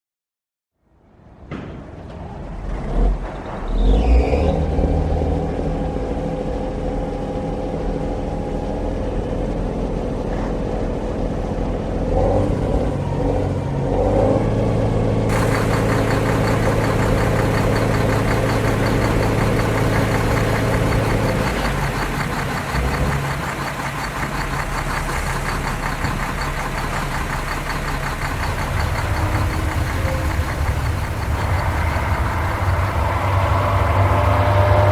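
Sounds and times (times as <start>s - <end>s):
truck engine idling: 15.3s - 34.9s.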